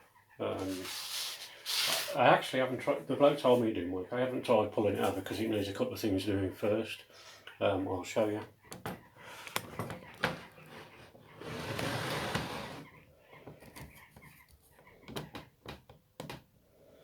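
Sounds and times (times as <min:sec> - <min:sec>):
rough rustling noise: 0:00.5 - 0:03.7.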